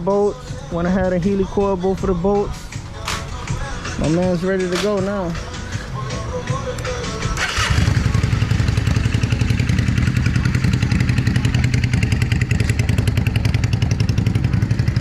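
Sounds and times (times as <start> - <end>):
motorcycle engine starting and idling: 6.5 - 15.0.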